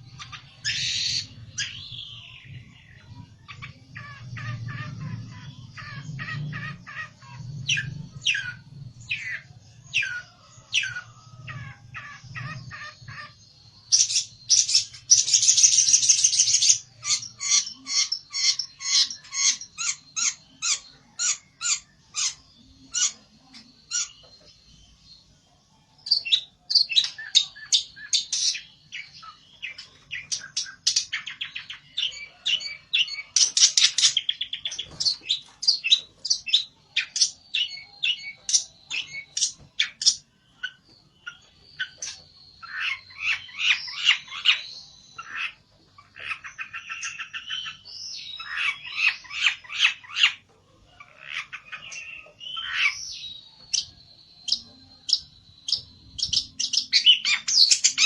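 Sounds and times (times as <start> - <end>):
buzzy bird trills: 0.0 - 24.5, 48.4 - 58.0
songbird singing rapid high chirps: 0.0 - 25.4, 51.1 - 58.0.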